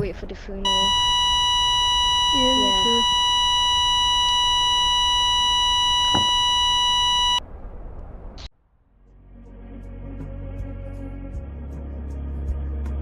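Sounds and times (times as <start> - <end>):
high-pitched electronic beep tone: 0.7 - 7.4
music: 8.9 - 13.0.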